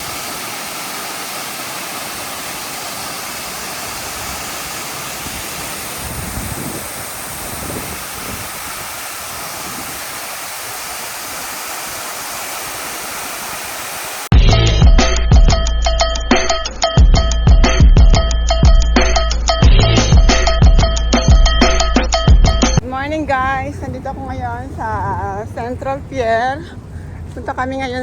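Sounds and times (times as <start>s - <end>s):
waterfall rushing: 0.0s - 14.4s
wind rumble on microphone: 5.1s - 11.0s
loud music with percussion: 14.3s - 22.8s.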